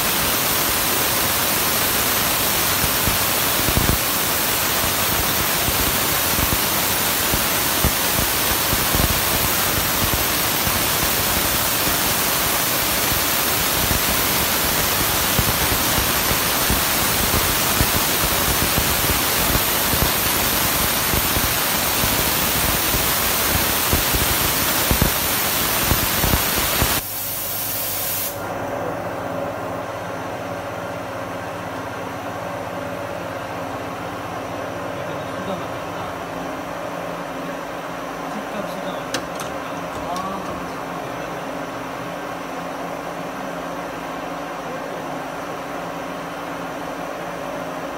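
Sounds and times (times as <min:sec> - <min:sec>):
coolant spray hissing: 0:00.0 - 0:28.4
machine hum with fixed tones: 0:00.0 - 0:47.9.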